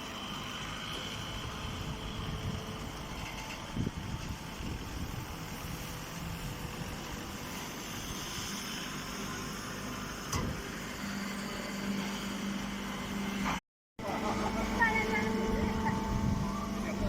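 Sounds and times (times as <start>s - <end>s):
machine running: 10.8s - 17.0s
low even hum: 14.0s - 17.0s.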